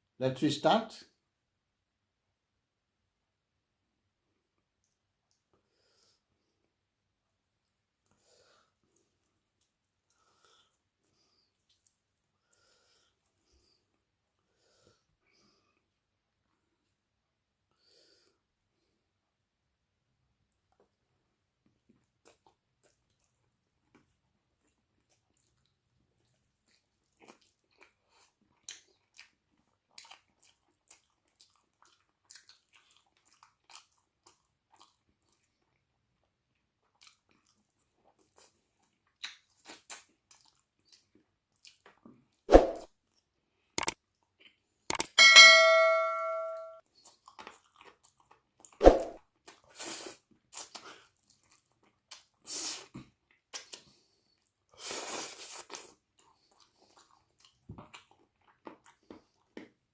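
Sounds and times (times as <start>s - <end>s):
wet chewing: 8.8s - 13.8s, 21.9s - 42.4s, 43.1s - 45.1s, 46.8s - 59.9s
crunchy chewing: 22.1s - 35.8s, 46.9s - 48.8s
mouth clicks: 44.9s - 45.2s
metallic clang ringing: 45.2s - 46.8s.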